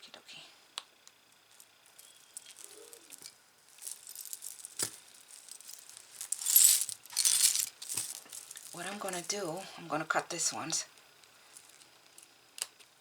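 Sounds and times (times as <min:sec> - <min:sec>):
metal chains and beads jingling: 0:01.8 - 0:09.6.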